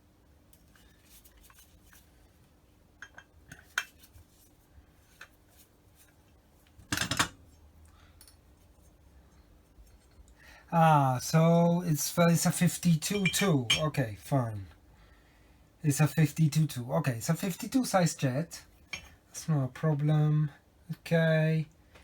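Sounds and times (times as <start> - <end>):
metal parts and tools clinking: 13.0 - 14.0.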